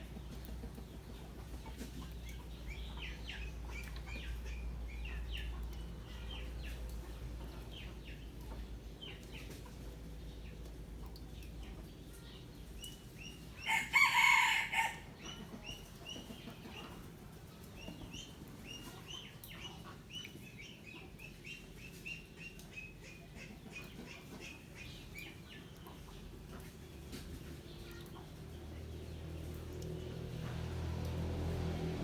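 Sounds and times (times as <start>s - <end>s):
rooster crowing: 13.7s - 15.1s.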